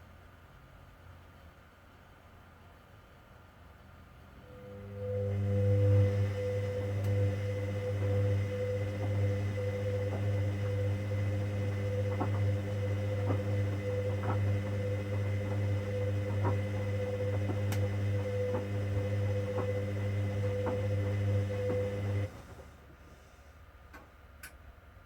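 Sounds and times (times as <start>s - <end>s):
washing machine hum: 4.4s - 24.2s
faint clicking: 16.1s - 22.6s, 23.9s - 24.6s.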